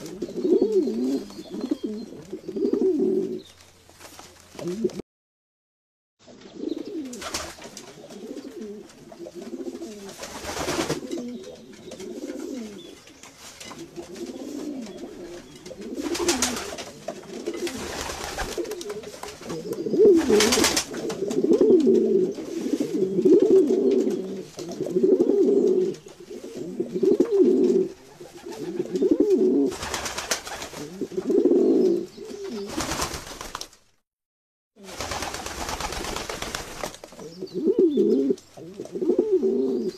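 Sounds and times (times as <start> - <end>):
pigeons cooing: 0.0 - 3.5, 4.6 - 5.0, 6.4 - 13.0, 13.8 - 33.0, 37.2 - 39.9
wings flapping: 7.0 - 8.0, 9.8 - 11.3, 15.3 - 21.3, 29.7 - 31.0, 32.4 - 33.9, 34.8 - 37.2.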